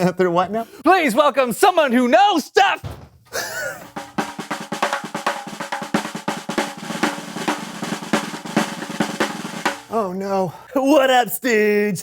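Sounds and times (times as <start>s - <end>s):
fast snare drum roll: 3.8s - 10.0s.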